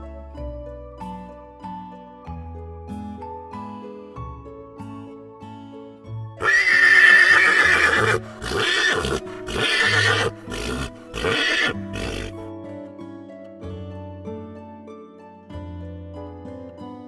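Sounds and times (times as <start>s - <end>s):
gentle background music: 0.0s - 17.0s
horse neighing and whinnying: 6.4s - 12.4s.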